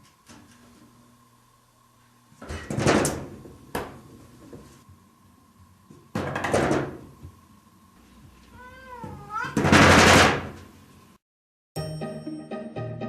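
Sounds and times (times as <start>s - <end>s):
objects clattering and knocking: 2.4s - 4.8s, 6.0s - 7.2s.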